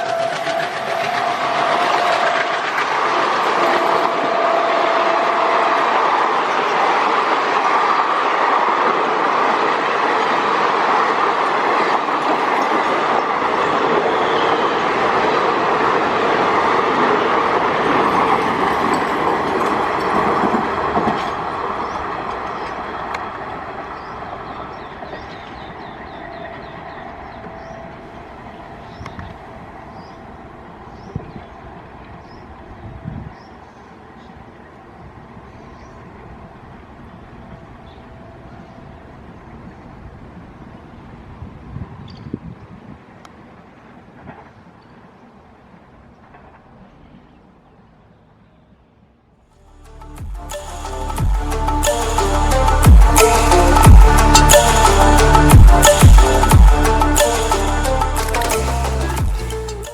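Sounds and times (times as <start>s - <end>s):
train horn: 0.0s - 7.4s
train wheels clattering on rails: 0.0s - 27.8s.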